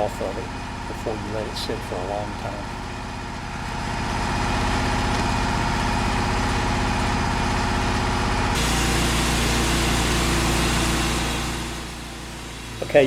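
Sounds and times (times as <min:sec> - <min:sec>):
sawmill engine running: 0:00.0 - 0:13.0
band saw cutting log: 0:03.8 - 0:13.0.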